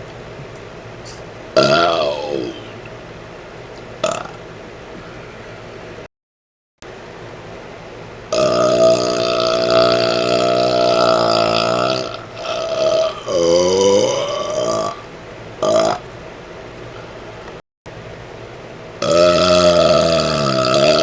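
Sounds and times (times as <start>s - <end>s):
fan whirring: 0.0s - 6.1s, 6.8s - 21.0s
man burping: 1.6s - 2.7s, 4.0s - 4.4s, 8.3s - 15.0s, 15.6s - 16.0s, 19.0s - 21.0s.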